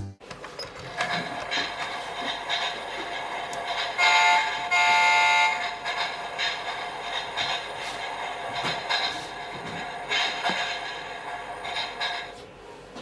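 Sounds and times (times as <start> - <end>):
electronic toy train horn toots: 4.0 - 5.6.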